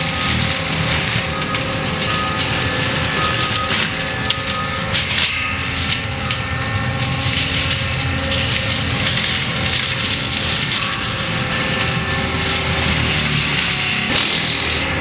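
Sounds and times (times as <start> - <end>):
forestry mulcher grinding wood: 0.0 - 15.0
loader engine under load: 0.0 - 15.0.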